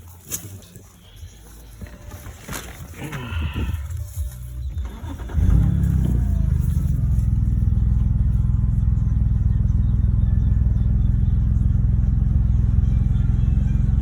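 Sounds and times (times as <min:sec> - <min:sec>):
car engine idling roughly: 0:03.0 - 0:14.0.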